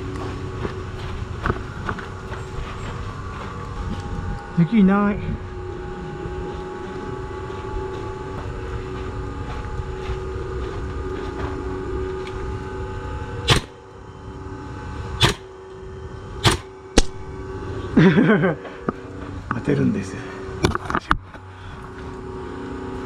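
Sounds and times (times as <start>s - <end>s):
steady low hum: 0.0s - 23.0s
airsoft gun shots: 13.5s - 13.8s, 15.2s - 15.5s, 16.4s - 17.2s.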